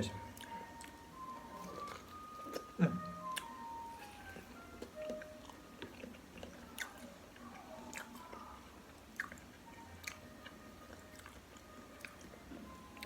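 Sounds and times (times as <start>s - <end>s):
person chewing and biting: 0.4s - 7.1s.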